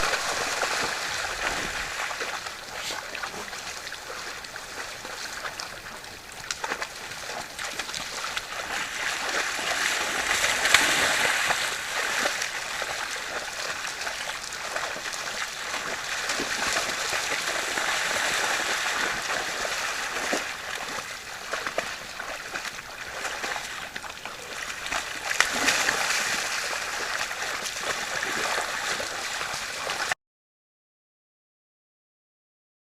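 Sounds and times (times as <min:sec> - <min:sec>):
rushing water: 0:00.0 - 0:30.2.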